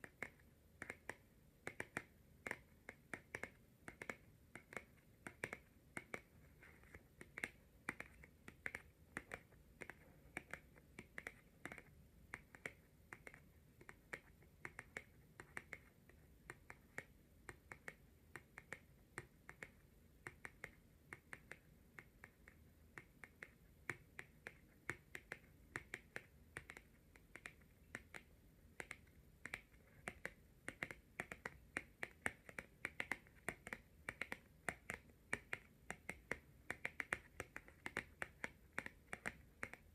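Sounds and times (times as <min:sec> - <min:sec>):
fingernails tapping on cards: 0:00.0 - 0:39.9.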